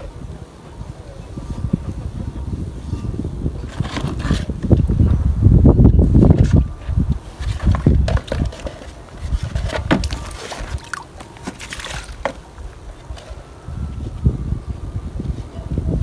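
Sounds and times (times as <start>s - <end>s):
knocks and rustles: 3.6s - 13.4s
water sloshing and splashing: 6.4s - 13.4s.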